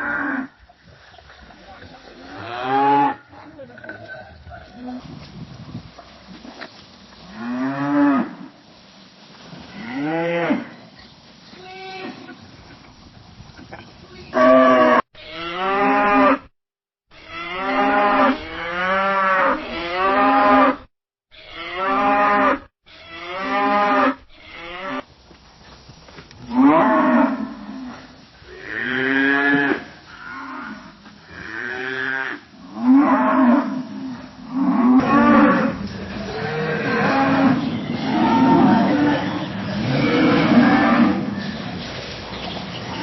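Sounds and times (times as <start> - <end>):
cattle mooing: 31.4 - 41.4.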